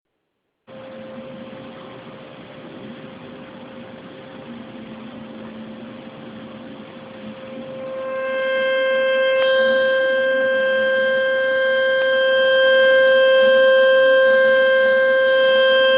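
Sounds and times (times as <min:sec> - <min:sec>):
water boiling with low hiss: 0:00.7 - 0:07.9
shrill steam whistle: 0:07.2 - 0:15.9.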